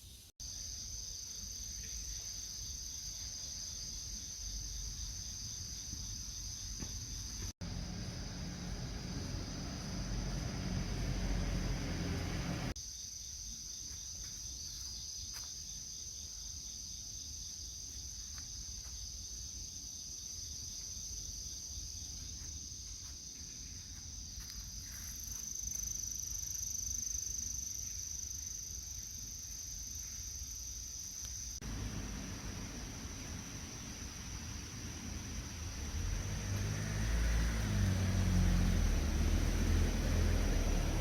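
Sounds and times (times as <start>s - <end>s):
insects droning: 0.0s - 41.0s
low rumble: 31.6s - 36.3s.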